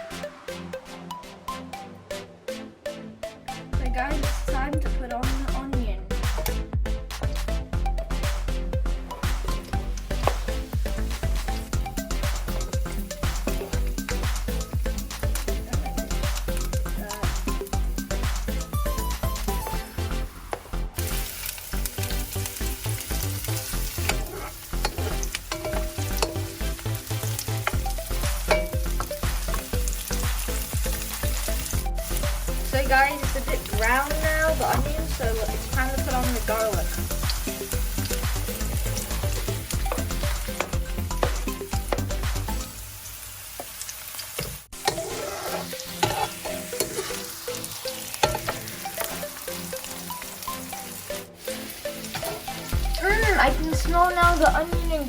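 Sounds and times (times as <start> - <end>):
onion sizzling in hot oil: 9.7 - 55.0
utensil scraping a wok: 23.6 - 26.9, 44.8 - 47.4
utensil clicking and scraping pan: 44.4 - 47.3.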